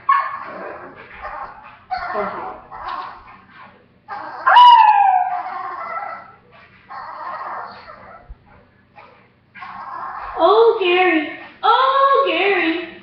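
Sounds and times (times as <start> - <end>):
dog howling: 4.1 - 8.3.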